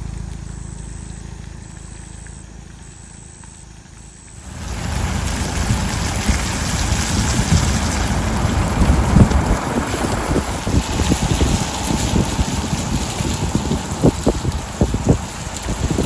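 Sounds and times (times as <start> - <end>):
heavy rain hiss: 0.0 - 16.0
low rumble: 0.0 - 16.0.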